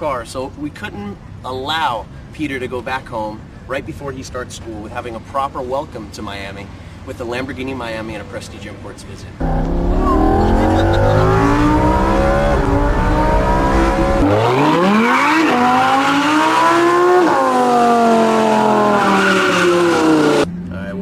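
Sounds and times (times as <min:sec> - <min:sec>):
car engine pulling hard: 0:09.4 - 0:20.5.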